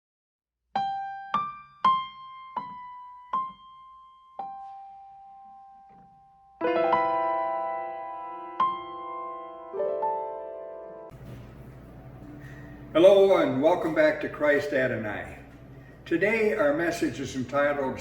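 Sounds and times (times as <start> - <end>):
piano notes and chord: 0.8 - 12.5.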